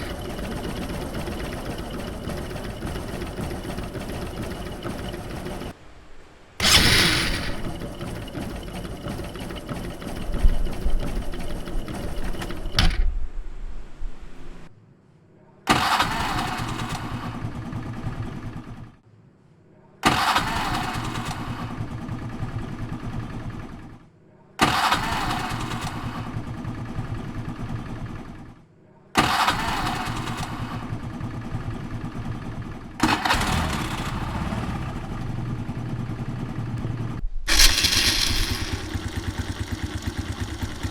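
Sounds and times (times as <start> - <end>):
electric starter whirring: 0.0 - 5.8, 6.6 - 13.2, 15.7 - 19.0, 24.6 - 28.6, 29.2 - 40.9
motorcycle engine idling: 0.0 - 5.8, 6.6 - 13.0, 15.9 - 19.0, 20.3 - 24.0, 24.8 - 28.6, 29.4 - 40.9.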